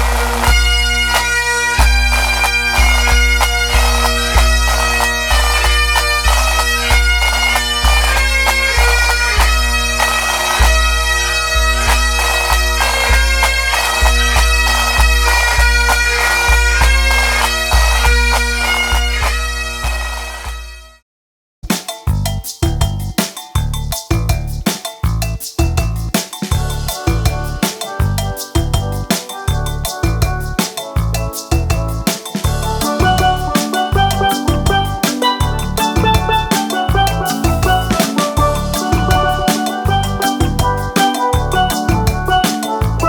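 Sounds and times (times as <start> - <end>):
heavy low beat: 0.0 - 18.1, 22.1 - 43.0
bagpipe-like melody with drones: 0.0 - 21.0.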